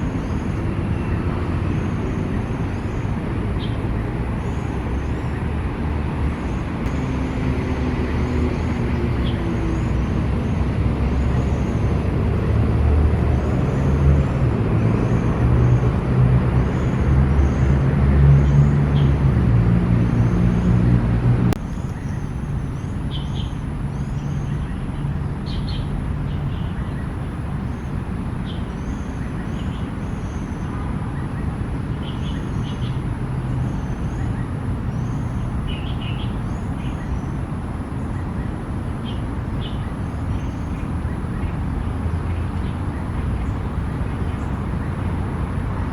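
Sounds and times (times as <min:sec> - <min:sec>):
heavy vehicle engine passing: 0:00.0 - 0:21.6
road traffic rumble: 0:00.0 - 0:45.9.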